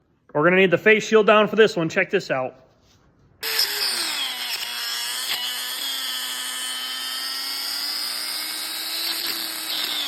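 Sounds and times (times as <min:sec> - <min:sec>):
angle grinder whining: 0:03.4 - 0:10.0.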